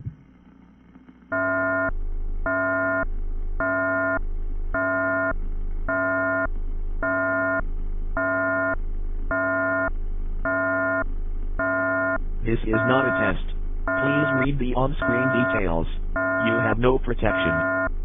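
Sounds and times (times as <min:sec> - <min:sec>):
alternating high and low alert tone: 0:11.6 - 0:17.9.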